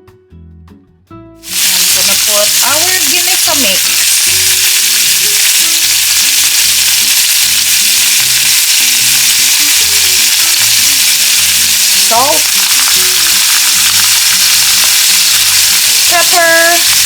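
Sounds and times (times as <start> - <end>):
soft background music: 0.0 - 1.5
chicken wings sizzling in oil: 1.4 - 17.0.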